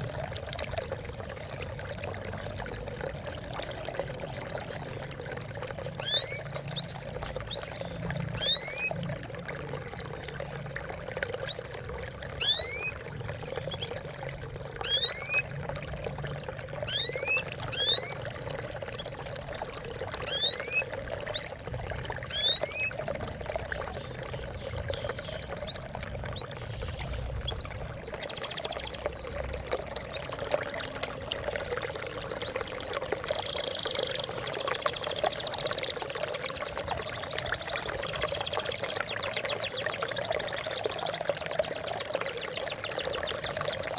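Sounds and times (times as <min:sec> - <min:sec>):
water trickling and splashing: 0:00.0 - 0:43.9
bird trills: 0:06.0 - 0:06.9, 0:08.4 - 0:08.9, 0:13.7 - 0:15.4, 0:16.9 - 0:18.2, 0:20.2 - 0:20.8, 0:22.2 - 0:22.9
small birds chirping: 0:06.0 - 0:09.0, 0:11.4 - 0:15.4, 0:16.8 - 0:18.2, 0:20.2 - 0:29.4, 0:32.2 - 0:43.9.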